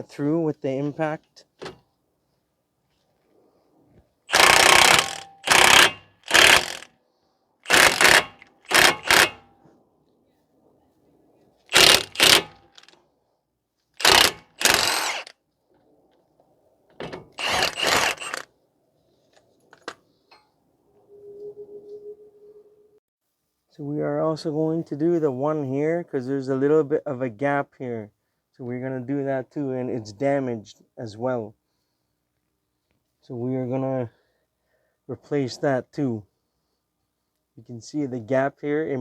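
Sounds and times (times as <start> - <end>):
impact wrench hammering: 4.3 - 6.8, 7.7 - 9.5, 11.7 - 12.8, 14.0 - 15.3, 17.0 - 18.4.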